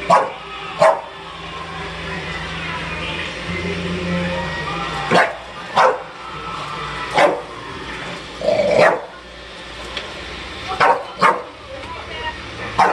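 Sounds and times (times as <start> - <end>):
dog barking: 0.1 - 1.1, 5.1 - 6.1, 7.2 - 7.5, 8.8 - 9.1, 10.8 - 11.5.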